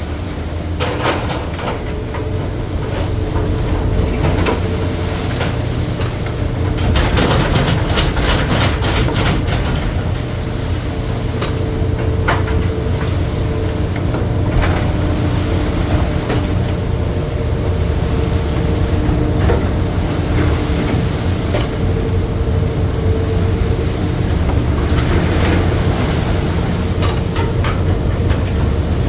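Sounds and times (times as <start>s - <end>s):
boat engine droning: 0.0s - 29.0s
knocks and clanks: 5.4s - 13.2s, 24.2s - 29.0s.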